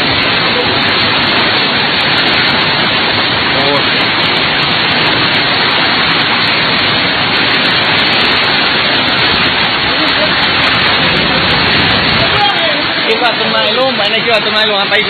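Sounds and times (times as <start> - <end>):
driving rain: 0.0 - 15.0
wind: 0.0 - 15.0.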